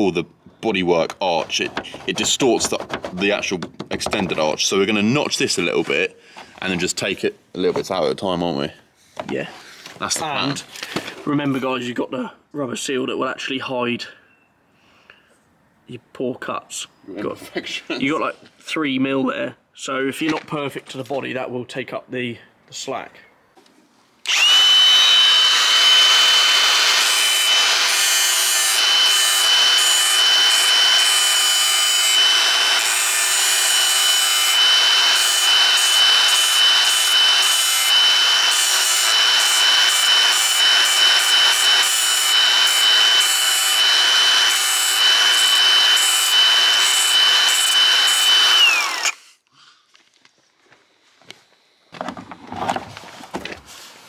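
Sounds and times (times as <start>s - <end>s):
blade rasping through metal: 24.3s - 49.2s
power tool motor whining: 24.3s - 49.4s.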